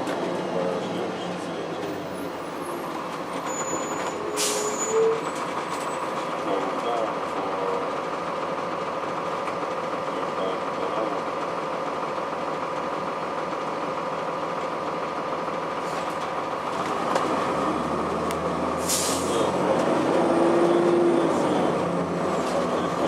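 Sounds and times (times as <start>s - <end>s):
bus diesel engine running: 0.0s - 23.0s.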